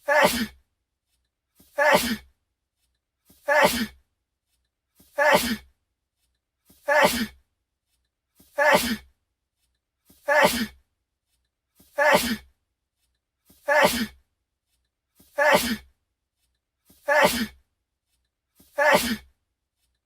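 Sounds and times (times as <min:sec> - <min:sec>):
man sneezing: 0:00.0 - 0:00.6, 0:01.8 - 0:02.2, 0:03.4 - 0:04.0, 0:05.2 - 0:05.6, 0:06.8 - 0:07.4, 0:08.6 - 0:09.0, 0:10.3 - 0:10.8, 0:12.0 - 0:12.4, 0:13.7 - 0:14.2, 0:15.4 - 0:15.9, 0:17.1 - 0:17.6, 0:18.8 - 0:19.3.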